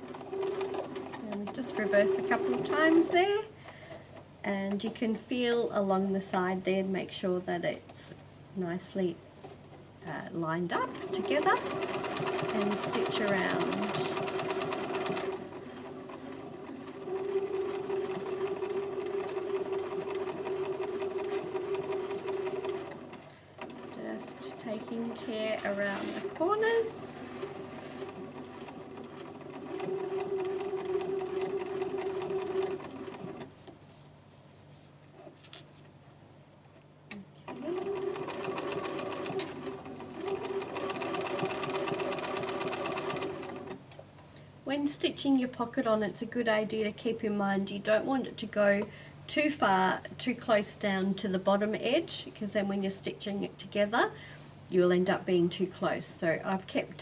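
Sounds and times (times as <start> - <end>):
sewing machine running: 0.0 - 3.2, 10.8 - 33.5, 37.5 - 43.8.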